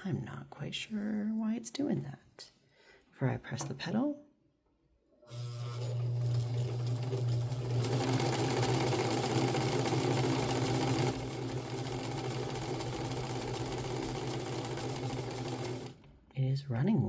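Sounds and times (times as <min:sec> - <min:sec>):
sewing machine running: 0:05.3 - 0:16.1.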